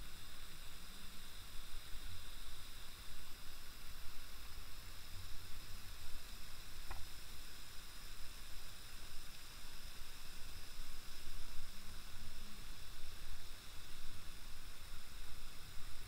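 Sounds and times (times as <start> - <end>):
faint click: 6.8 - 7.1.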